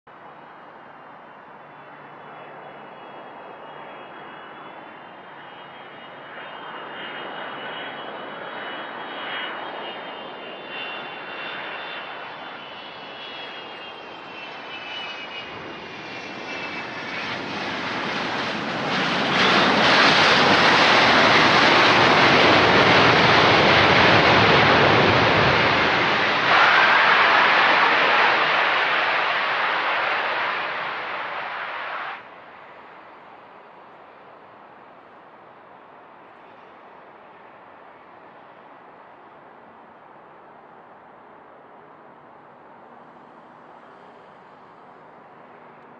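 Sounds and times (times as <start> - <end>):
jet engine rush: 1.4 - 45.9
jet engines whining: 1.6 - 33.2.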